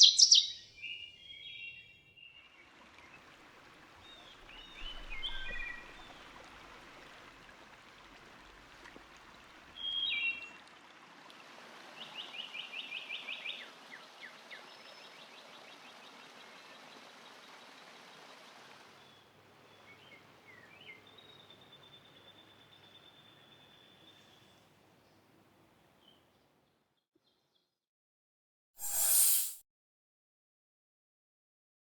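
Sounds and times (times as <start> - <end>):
fast bird trill: 0.0 - 0.5
songbirds singing: 0.0 - 2.6, 4.0 - 6.7, 19.0 - 25.2.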